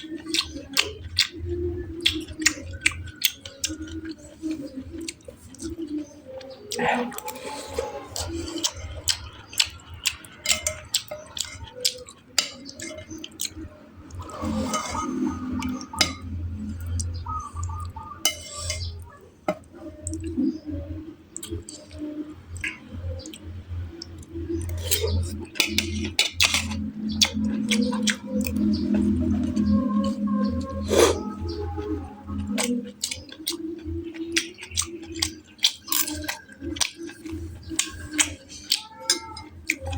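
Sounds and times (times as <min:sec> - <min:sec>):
wet chewing: 0:00.0 - 0:20.4, 0:21.3 - 0:39.9
cutlery clinking on a dish: 0:18.2 - 0:18.9.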